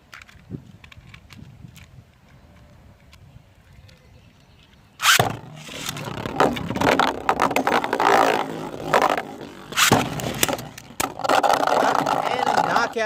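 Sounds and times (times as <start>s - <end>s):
spinning tops launching: 5.0s - 12.7s
spinning tops whirring and clattering: 7.2s - 12.9s.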